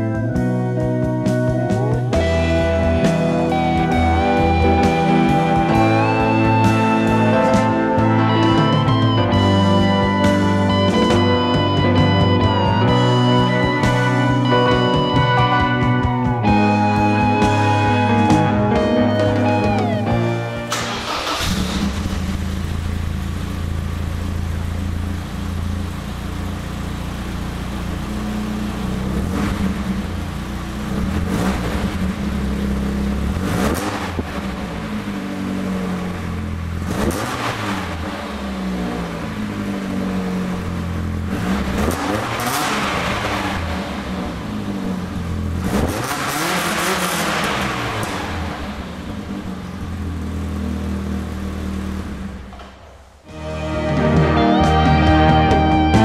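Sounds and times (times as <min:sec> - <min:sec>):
car engine revving: 0:00.0 - 0:56.0.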